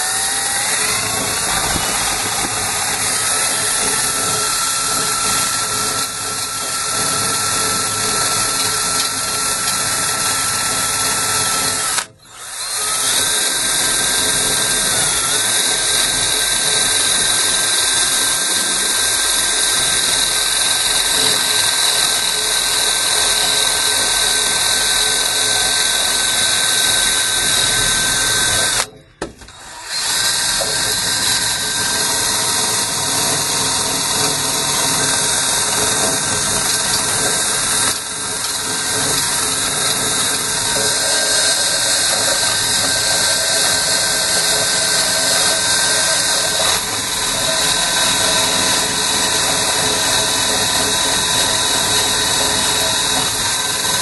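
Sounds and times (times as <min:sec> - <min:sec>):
power drill wire brush on pipe: 0:00.0 - 0:28.9, 0:29.5 - 0:54.0.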